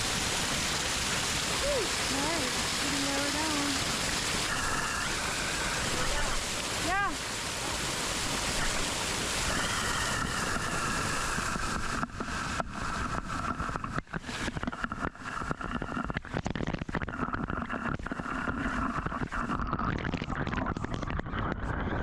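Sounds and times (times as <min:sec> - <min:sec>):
waterfall and creek rushing: 0:00.0 - 0:13.5.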